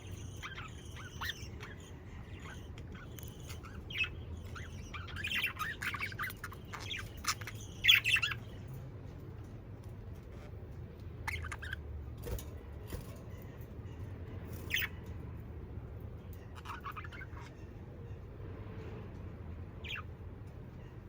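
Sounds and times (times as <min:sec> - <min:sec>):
budgerigars chirping: 0:00.0 - 0:08.6, 0:11.2 - 0:11.9, 0:13.4 - 0:15.1, 0:16.4 - 0:17.8, 0:19.8 - 0:20.1
low steady hum: 0:00.0 - 0:21.0.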